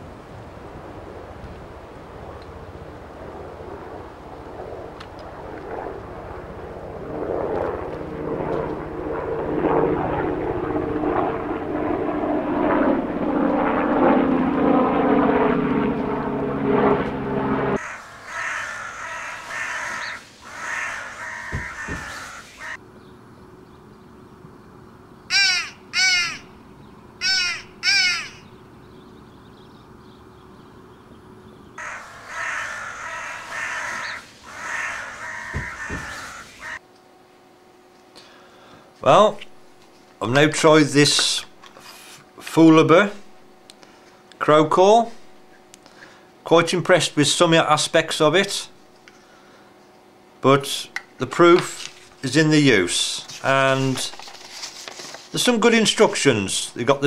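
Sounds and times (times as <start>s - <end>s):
crow cawing: 17.8s - 22.8s, 25.3s - 26.6s, 27.2s - 28.6s, 31.8s - 36.8s.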